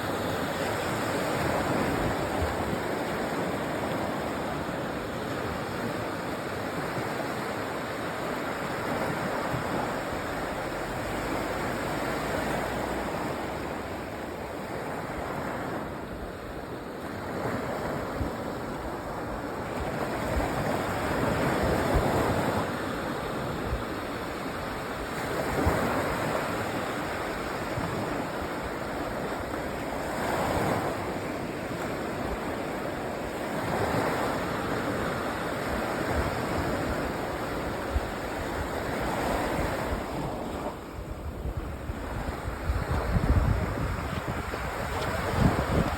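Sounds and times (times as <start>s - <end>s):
waves breaking on sand: 0.0s - 45.9s
wind buffeting microphone: 14.5s - 45.9s.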